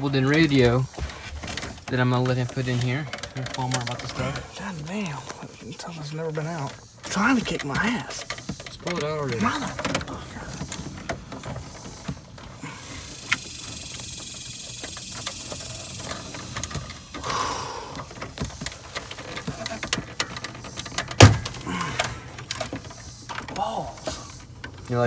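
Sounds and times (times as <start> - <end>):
plastic trim being pried out: 17.9 - 24.8.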